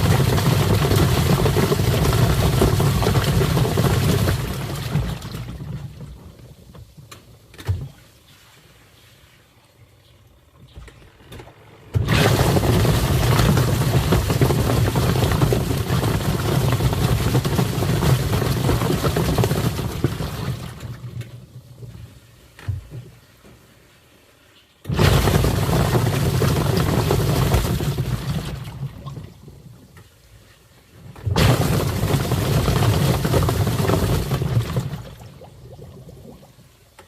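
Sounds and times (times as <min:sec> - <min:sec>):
washing machine motor hum: 0:00.0 - 0:06.2, 0:10.3 - 0:21.0
water churning and sloshing: 0:00.0 - 0:23.4, 0:24.8 - 0:37.0.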